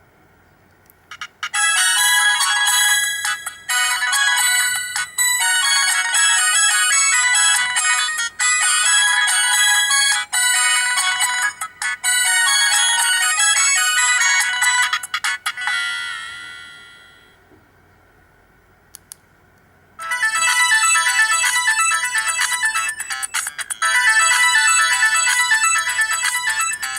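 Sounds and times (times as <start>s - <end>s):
polyphonic ringtone melody: 1.1s - 17.4s, 20.0s - 26.9s.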